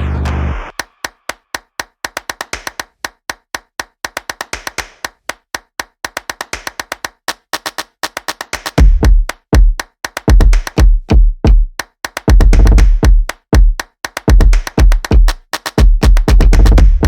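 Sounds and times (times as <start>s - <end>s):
electronic clap percussion: 0.0s - 17.0s.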